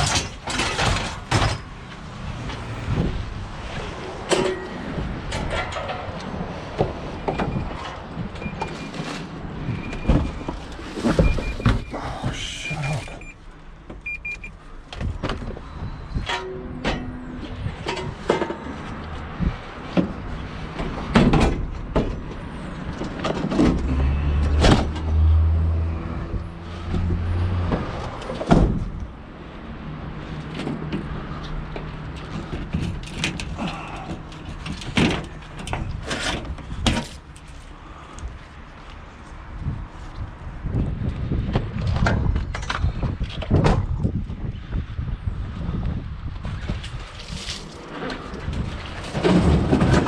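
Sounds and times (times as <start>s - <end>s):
knocks and rattles: 0.0s - 8.4s, 47.8s - 50.0s
heavy low rumble: 0.1s - 5.7s.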